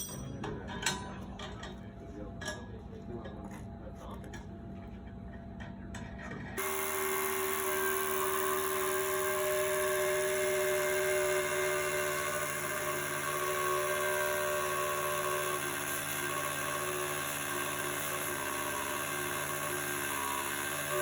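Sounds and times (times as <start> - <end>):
small electric motor whining: 6.6 - 21.0.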